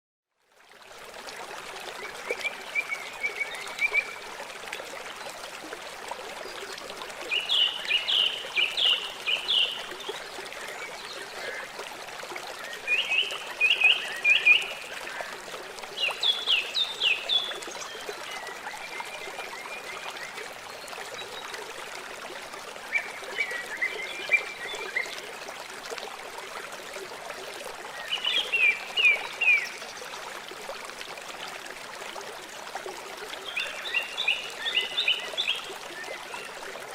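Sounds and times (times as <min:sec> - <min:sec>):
river flowing: 0:00.6 - 0:36.9.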